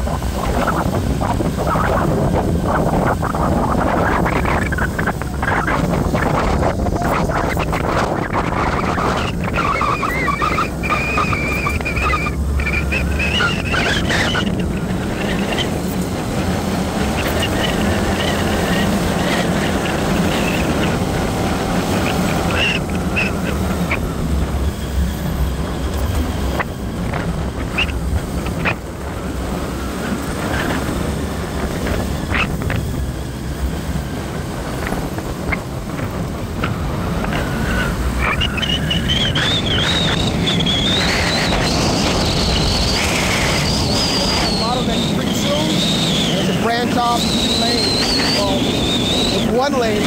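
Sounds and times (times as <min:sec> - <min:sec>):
car engine and road noise: 0:00.0 - 0:50.0
high wavering whistle tone: 0:08.6 - 0:14.5, 0:37.5 - 0:50.0.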